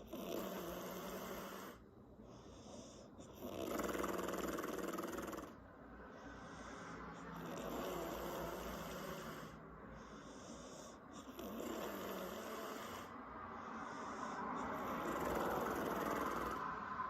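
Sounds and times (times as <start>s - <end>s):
woman snoring: 0.0s - 1.8s, 3.3s - 5.6s, 7.3s - 9.6s, 11.2s - 13.1s, 14.4s - 16.7s.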